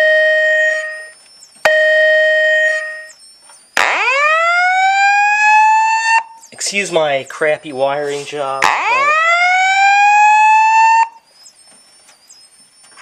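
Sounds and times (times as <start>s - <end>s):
upward sweeping alarm tone: 0.0s - 3.2s, 3.8s - 6.5s, 8.6s - 11.3s
fire alarm tones: 0.0s - 6.7s, 8.6s - 13.0s.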